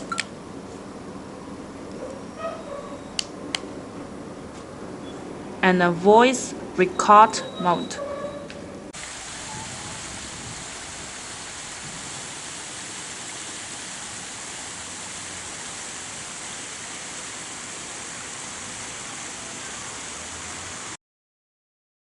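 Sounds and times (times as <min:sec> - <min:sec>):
steady high hiss: 0:08.9 - 0:21.0.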